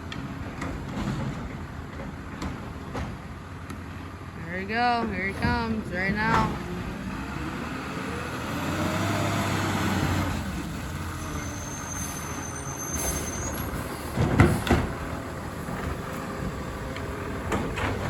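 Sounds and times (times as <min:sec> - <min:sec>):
garbage truck running: 0:00.0 - 0:18.0
thin high squeal: 0:11.2 - 0:13.9.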